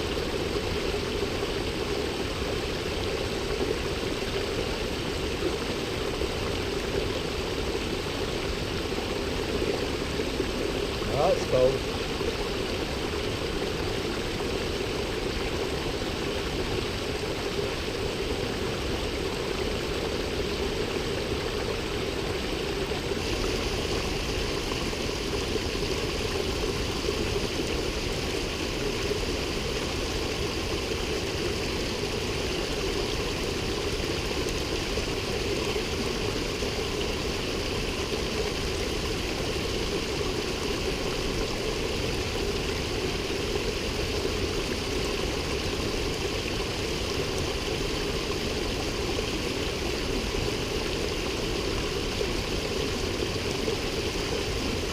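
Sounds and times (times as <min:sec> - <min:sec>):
river and waterfall rushing: 0:10.6 - 0:11.9.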